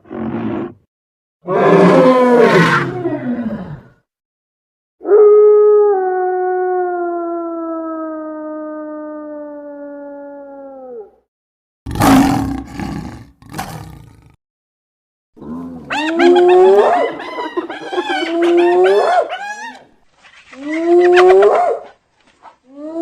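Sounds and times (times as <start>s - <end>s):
hyena roar: 1.4s - 4.0s, 11.9s - 14.4s, 15.4s - 19.9s
hyena rising whooping calls: 15.9s - 19.9s.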